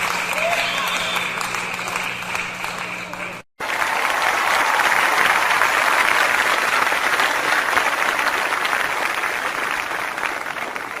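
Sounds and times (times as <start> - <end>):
crowd applauding: 0.0 - 11.0.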